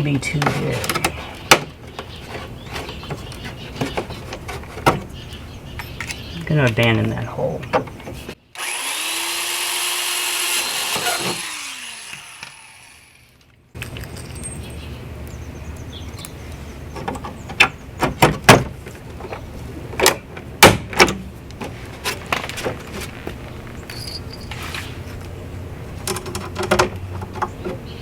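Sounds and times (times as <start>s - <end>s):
cordless drill drilling metal: 8.6s - 13.4s
sharp clicks and knocks: 26.0s - 27.8s.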